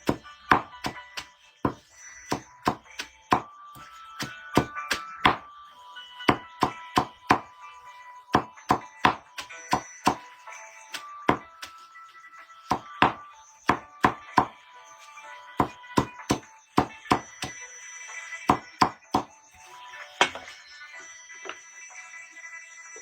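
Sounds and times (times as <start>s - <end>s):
background music: 0.0s - 23.0s
blade chopping into wood: 4.2s - 5.4s.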